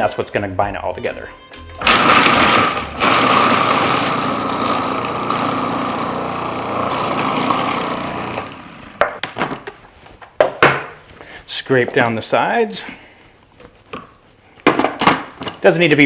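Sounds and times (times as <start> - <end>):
electric blender running: 1.8 - 9.2.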